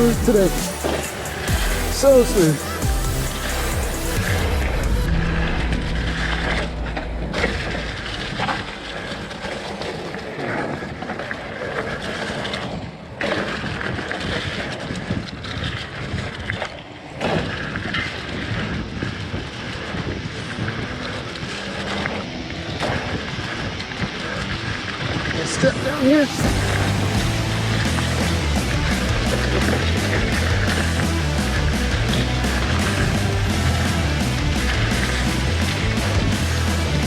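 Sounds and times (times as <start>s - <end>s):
wind on helmet camera: 7.8s - 25.4s
bike rattle: 26.4s - 37.0s.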